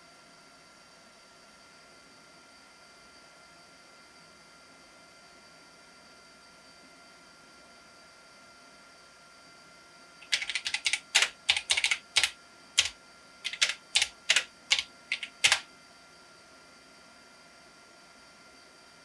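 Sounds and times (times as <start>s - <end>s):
typing on computer keyboard: 10.2s - 15.7s.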